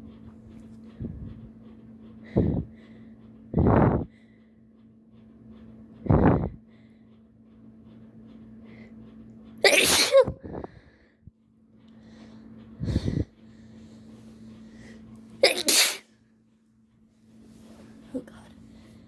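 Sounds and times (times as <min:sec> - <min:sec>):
faint steady hum: 0:00.0 - 0:19.0
person sneezing: 0:09.6 - 0:10.4, 0:15.4 - 0:16.0.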